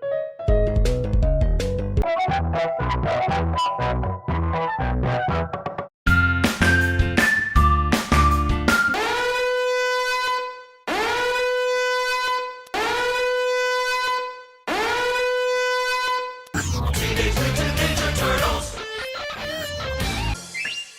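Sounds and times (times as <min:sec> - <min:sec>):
buzzy horn blasts: 0:09.0 - 0:16.5
guitar chords: 0:17.0 - 0:20.4.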